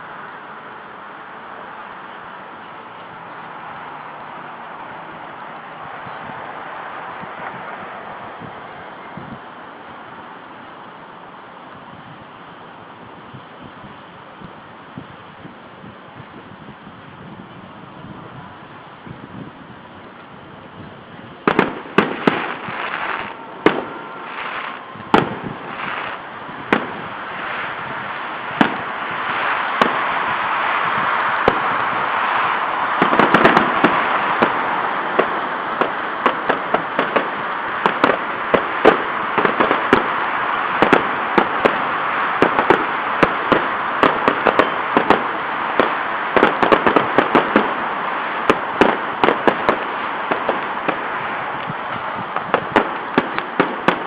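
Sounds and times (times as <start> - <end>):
fireworks bangs and pops: 21.4 - 54.0.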